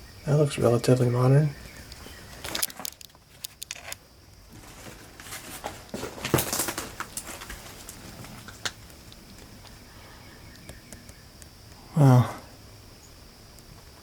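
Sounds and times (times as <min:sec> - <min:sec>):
crunches and clicks underfoot: 0:01.6 - 0:09.8.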